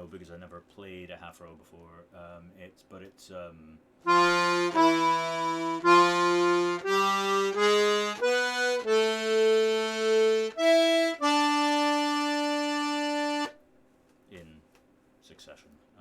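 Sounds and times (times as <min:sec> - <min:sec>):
button accordion single notes: 0:04.1 - 0:13.6.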